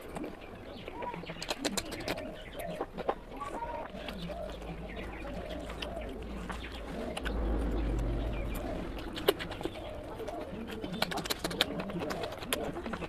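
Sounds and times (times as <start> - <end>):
wet chewing and lip-smacking: 0.0 - 13.0
low rumble: 4.8 - 10.3.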